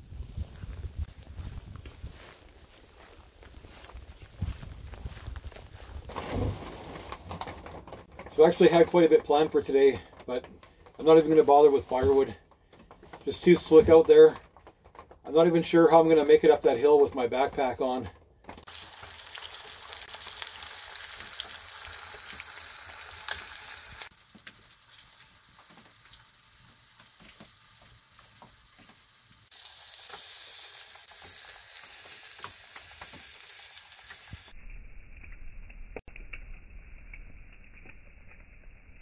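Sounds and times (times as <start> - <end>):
food sizzling in a frying pan: 18.7 - 34.6.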